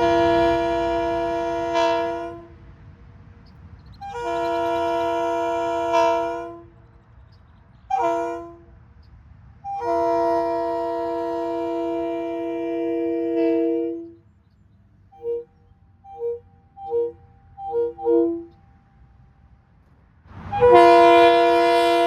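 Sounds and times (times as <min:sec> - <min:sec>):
air train horn blasts: 0:00.0 - 0:02.6, 0:04.0 - 0:06.8, 0:07.8 - 0:08.8, 0:09.6 - 0:14.2, 0:15.1 - 0:19.6, 0:20.3 - 0:22.0.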